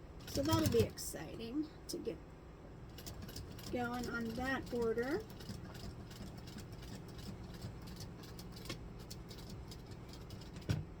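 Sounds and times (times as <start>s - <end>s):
sewing machine running: 2.9s - 10.6s.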